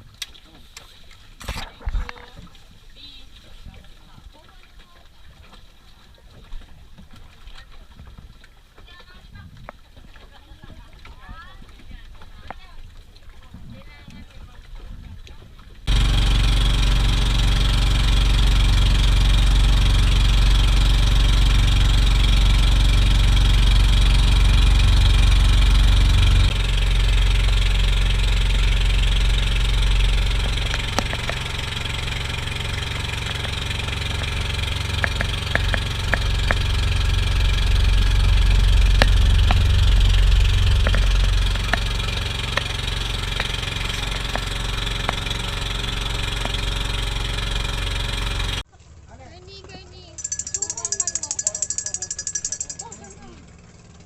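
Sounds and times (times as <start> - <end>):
boat engine humming: 15.5 - 48.6, 49.5 - 54.0.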